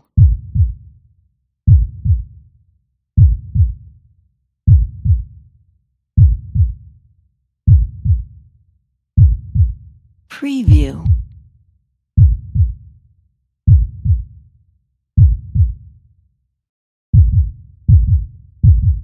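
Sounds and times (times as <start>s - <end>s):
heartbeat thumps: 0.2s - 0.7s, 6.2s - 6.8s, 10.7s - 11.3s, 15.2s - 15.8s, 17.2s - 19.0s.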